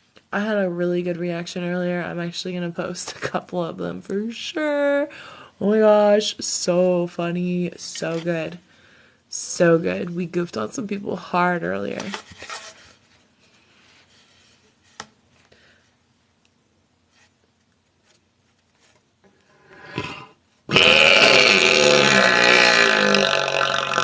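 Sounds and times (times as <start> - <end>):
woman burping loudly: 19.6 - 24.0.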